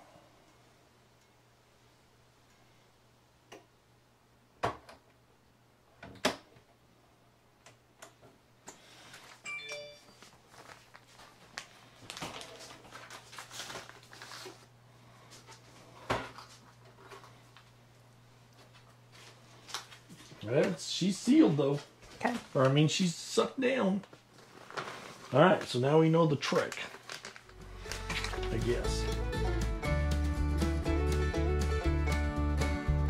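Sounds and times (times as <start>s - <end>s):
plastic rustling: 10.2s - 14.7s, 24.0s - 28.8s.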